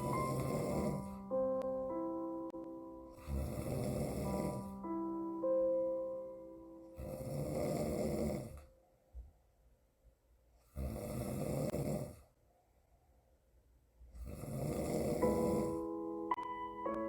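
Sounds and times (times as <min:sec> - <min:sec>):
woman snoring: 0:00.0 - 0:01.2, 0:03.2 - 0:04.7, 0:07.0 - 0:08.7, 0:10.8 - 0:12.2, 0:14.2 - 0:15.9
quiet breaths: 0:00.0 - 0:01.3, 0:03.1 - 0:04.8, 0:06.8 - 0:09.6.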